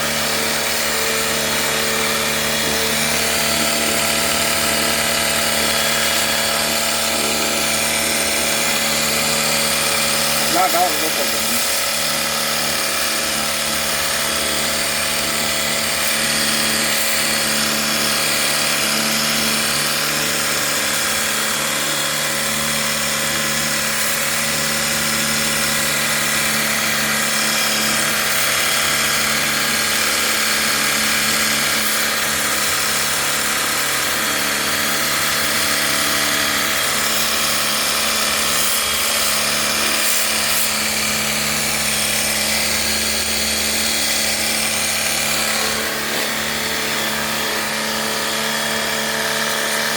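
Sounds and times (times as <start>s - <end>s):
water jet spraying: 0.0s - 22.3s, 25.1s - 49.9s
electric pump running: 0.0s - 49.9s.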